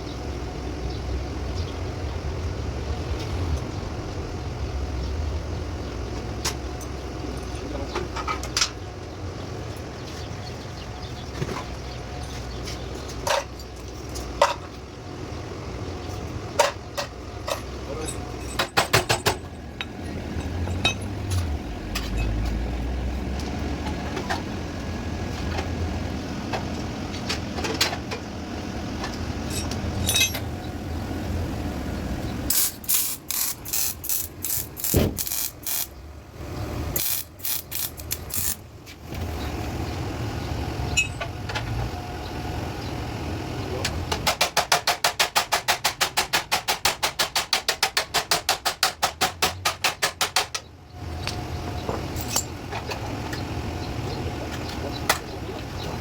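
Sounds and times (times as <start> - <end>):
steady background noise: 0.0 - 56.0
metal knocks and clanks: 16.5 - 22.6.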